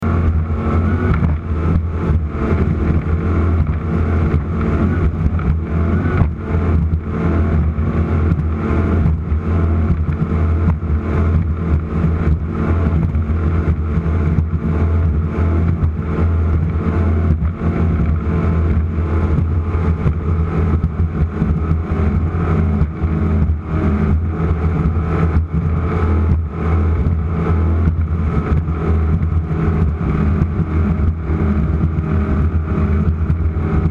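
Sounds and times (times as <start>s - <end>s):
powerboat engines droning: 0.0s - 33.9s.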